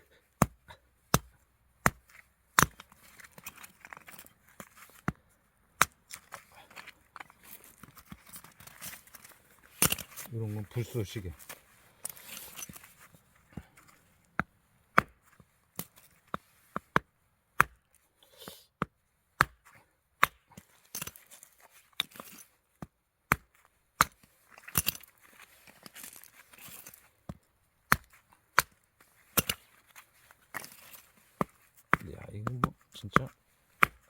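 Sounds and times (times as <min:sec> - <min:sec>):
blade chopping firewood: 0:00.2 - 0:18.0, 0:18.8 - 0:34.0.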